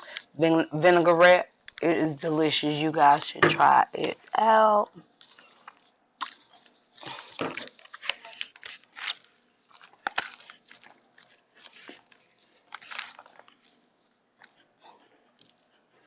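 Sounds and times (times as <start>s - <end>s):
wet chewing: 5.2s - 16.0s
crunching raw salad: 5.6s - 16.0s.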